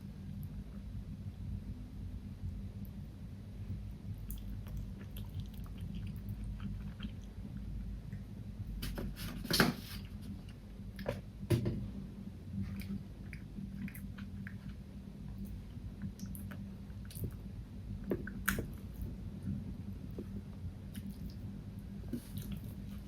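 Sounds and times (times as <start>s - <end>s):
person chewing food: 4.3s - 7.7s.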